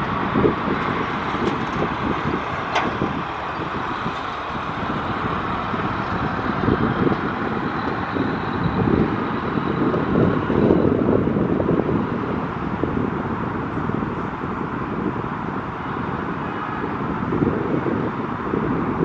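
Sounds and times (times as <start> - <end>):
jet engines at takeoff: 0.0 - 19.0
wind gusting on microphone: 0.0 - 19.0.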